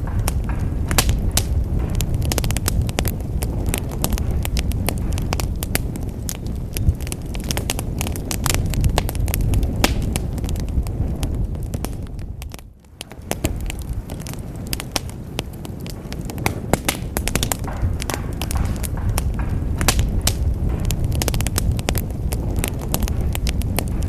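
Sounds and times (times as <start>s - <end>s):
fire crackling and popping: 0.0s - 24.0s
low rumble of flames: 0.0s - 24.0s.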